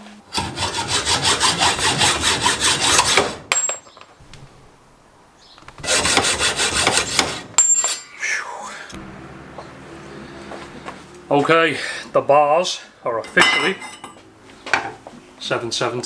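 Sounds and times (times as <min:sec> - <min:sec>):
hacksaw cutting metal: 0:00.3 - 0:03.7, 0:05.8 - 0:08.1.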